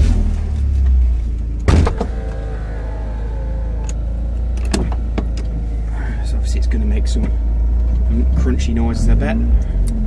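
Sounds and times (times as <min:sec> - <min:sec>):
car engine idling: 0:00.0 - 0:10.0
faint falling whine: 0:00.4 - 0:08.5.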